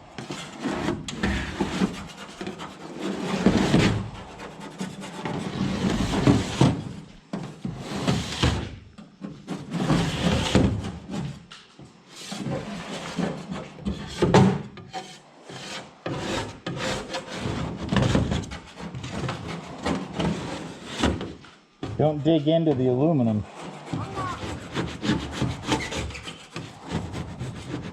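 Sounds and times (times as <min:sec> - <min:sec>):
paint scraper rasping on metal hull: 0:00.1 - 0:06.8, 0:12.3 - 0:21.4, 0:23.5 - 0:27.9.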